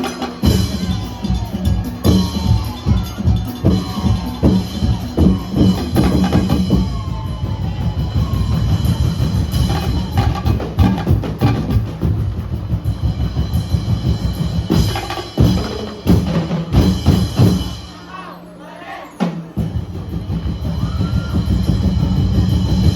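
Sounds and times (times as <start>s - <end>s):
percussion band drumming: 0.0s - 22.9s.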